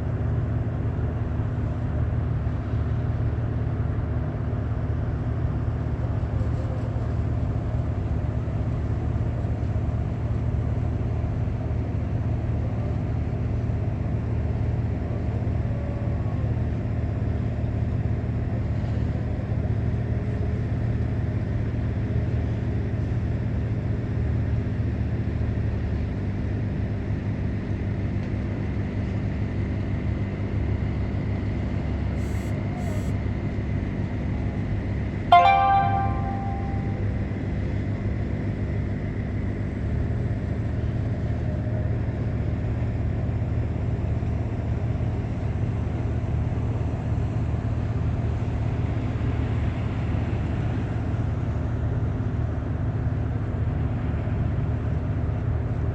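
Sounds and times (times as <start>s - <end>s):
boat engine droning: 35.3s - 37.6s.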